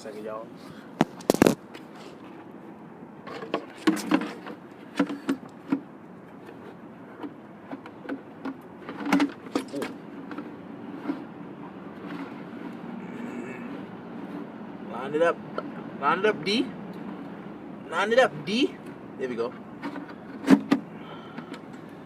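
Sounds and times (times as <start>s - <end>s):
handling clatter: 3.2s - 11.3s.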